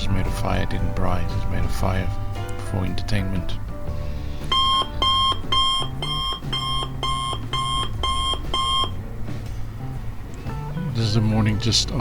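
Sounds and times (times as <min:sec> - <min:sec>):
alarm beeping: 0:04.5 - 0:09.0.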